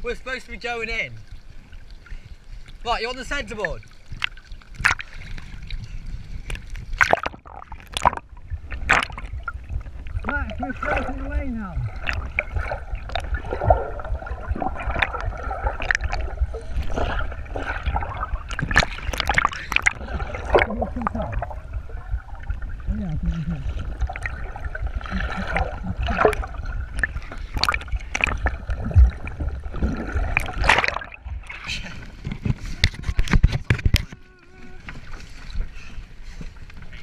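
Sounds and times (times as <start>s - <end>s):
water sloshing around boat: 0.5s - 37.0s
sharp splashes: 7.0s - 31.7s
low rumble: 8.2s - 32.6s.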